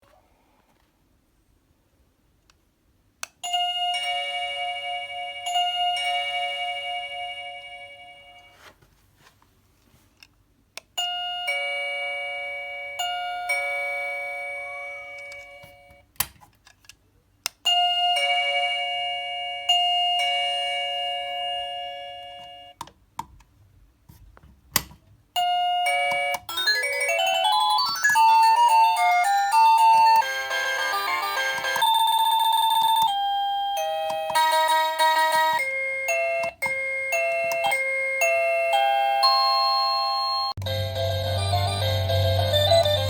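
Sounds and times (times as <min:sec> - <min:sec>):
doorbell two-tone chime: 0:03.4 - 0:08.6, 0:11.0 - 0:16.0, 0:17.7 - 0:22.8, 0:25.4 - 0:43.0
fast rising doorbell melody: 0:25.4 - 0:36.4, 0:37.1 - 0:43.0.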